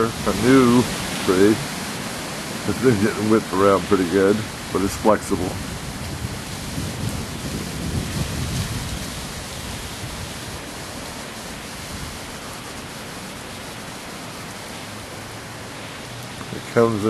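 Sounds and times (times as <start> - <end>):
wind buffeting microphone: 0.0 - 13.0
storm wind rushing: 0.0 - 13.4.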